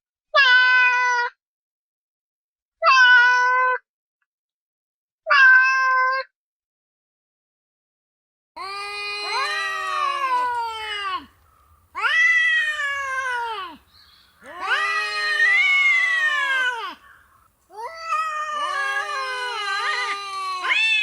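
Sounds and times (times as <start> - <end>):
cat meowing: 5.3 - 6.2, 12.0 - 13.8, 14.4 - 17.0, 17.8 - 21.0.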